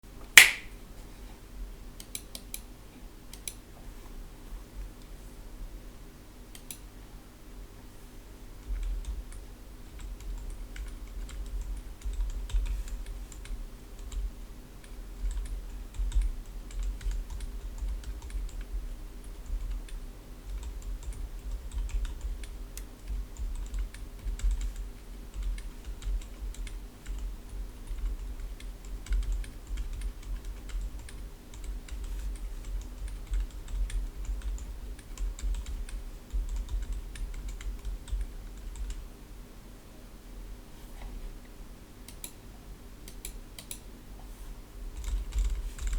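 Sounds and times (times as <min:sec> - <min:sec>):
faint steady hum: 0:00.0 - 0:45.9
keyboard typing: 0:09.9 - 0:18.8, 0:19.4 - 0:39.0, 0:45.0 - 0:45.9.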